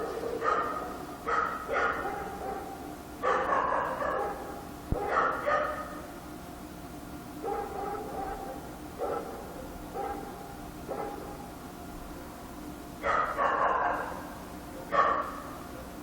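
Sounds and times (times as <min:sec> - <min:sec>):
dog barking: 0:00.0 - 0:06.0, 0:07.4 - 0:11.5, 0:13.0 - 0:15.6.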